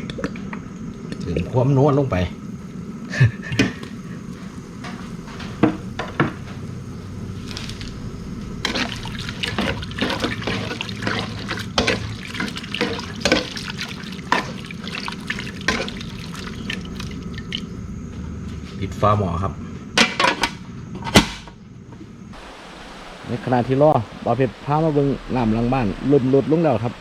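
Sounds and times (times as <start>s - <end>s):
stew sloshing in a pot: 8.6s - 17.7s.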